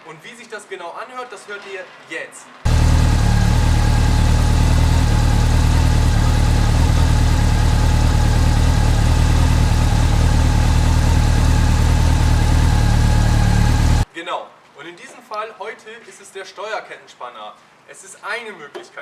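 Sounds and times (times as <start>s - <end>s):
motorcycle engine idling: 2.7s - 14.0s.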